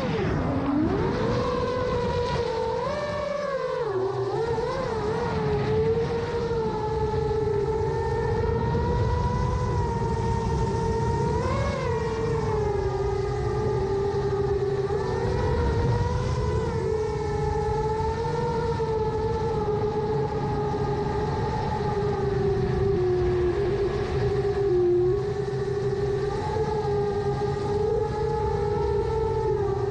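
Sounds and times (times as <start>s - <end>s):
drone motors whining: 0.0s - 29.9s
rushing of prop wash and wind: 0.0s - 29.9s.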